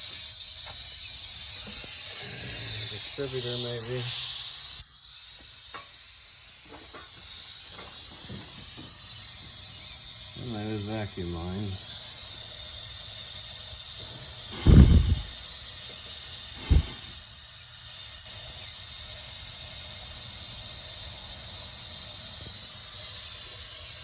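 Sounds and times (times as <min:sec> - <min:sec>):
compressed air hissing: 0:00.0 - 0:24.0
dull thumps: 0:14.6 - 0:15.3.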